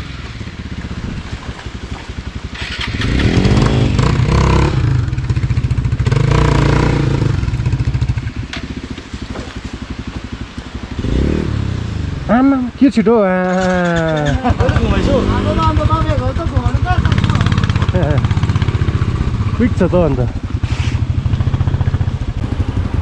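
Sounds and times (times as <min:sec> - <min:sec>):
motorcycle engine idling and revving: 0:00.0 - 0:23.0.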